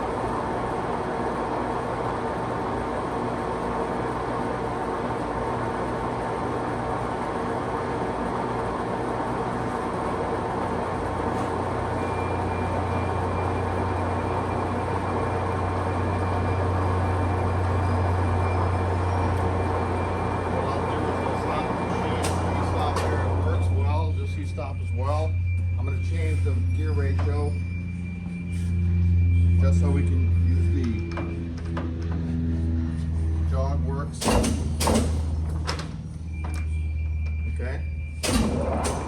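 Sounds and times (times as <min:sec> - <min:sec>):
lathe humming with gear whine: 0:00.0 - 0:39.0
low hum: 0:00.0 - 0:39.0
faint high whine: 0:09.2 - 0:34.2, 0:35.5 - 0:39.0.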